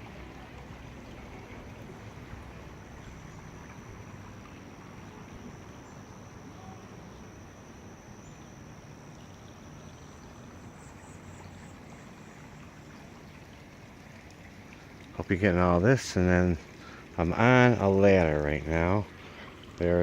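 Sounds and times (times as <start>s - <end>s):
high insect drone: 0.0s - 20.0s
faint high chirps: 2.6s - 13.4s.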